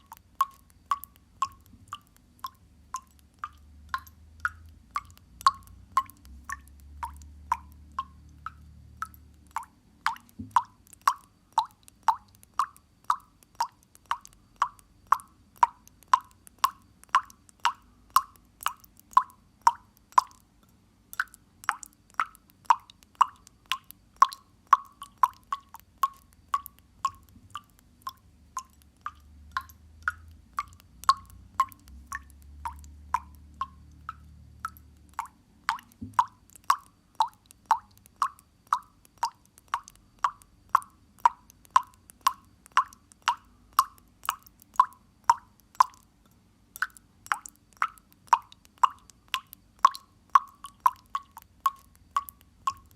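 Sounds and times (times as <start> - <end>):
faint low rumble: 0.0 - 11.0, 26.0 - 36.7
water dripping into water: 0.0 - 52.9.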